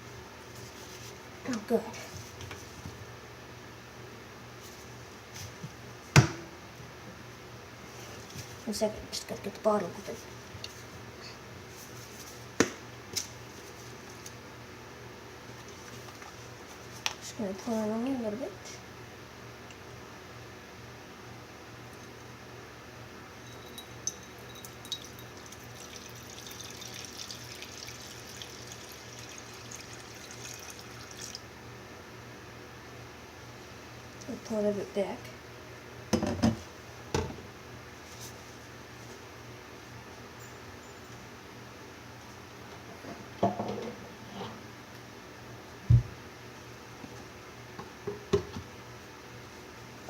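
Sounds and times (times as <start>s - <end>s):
low steady hum: 0.0s - 50.0s
liquid pouring into a bowl: 24.0s - 31.5s.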